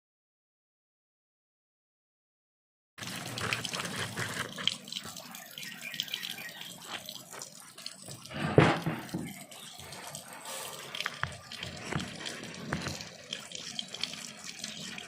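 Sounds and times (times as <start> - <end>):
small clicks and spatters: 3.0 - 15.0
water running and splashing: 3.0 - 15.0
loud splash or knock: 8.3 - 9.3.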